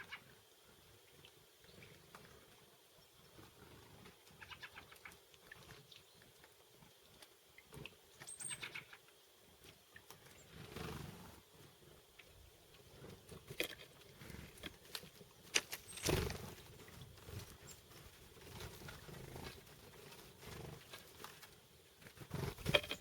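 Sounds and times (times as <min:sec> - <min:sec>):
bird peeps: 0:08.3 - 0:09.0.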